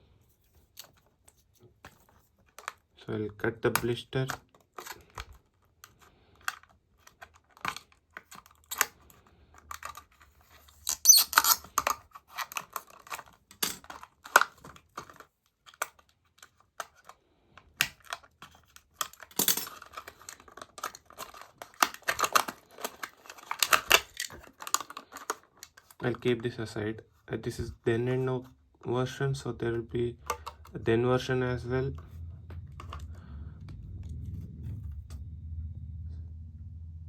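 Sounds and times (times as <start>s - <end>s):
plastic tearing and scraping: 4.2s - 26.4s
plastic packaging crinkling: 19.0s - 26.1s.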